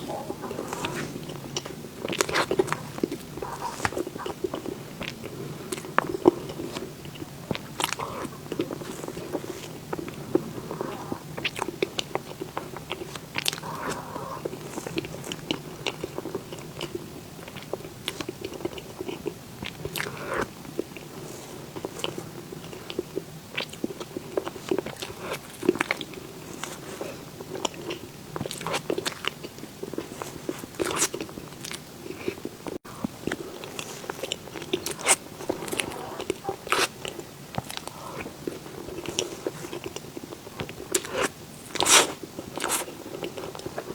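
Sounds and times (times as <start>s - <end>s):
person chewing: 0.0s - 43.9s
small crunches: 0.1s - 10.2s.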